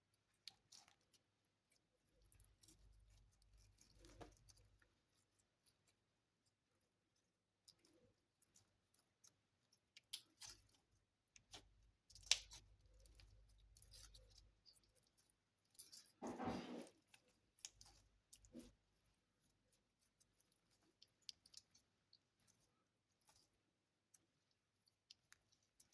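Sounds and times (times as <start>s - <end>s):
slime squish: 0.1s - 25.9s
sticky slime clicks and crackles: 9.2s - 15.2s.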